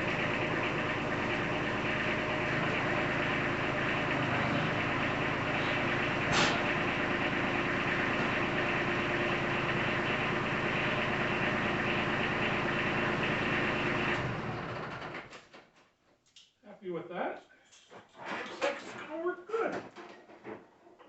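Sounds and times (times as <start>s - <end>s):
tractor diesel engine running: 0.0s - 15.3s.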